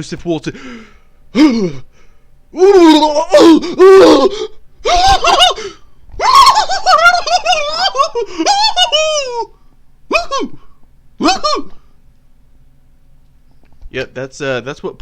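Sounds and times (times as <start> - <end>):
man moaning and squealing: 1.3 - 1.9, 2.5 - 11.9.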